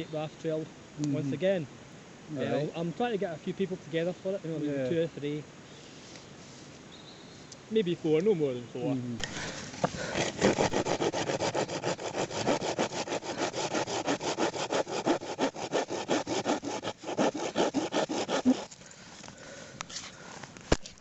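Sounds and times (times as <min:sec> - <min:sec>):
hand saw cutting wood: 0:09.2 - 0:18.8.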